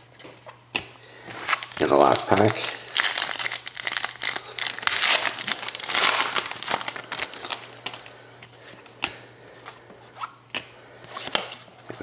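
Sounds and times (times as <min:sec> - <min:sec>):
wrapper crinkling and tearing: 0:01.4 - 0:07.7.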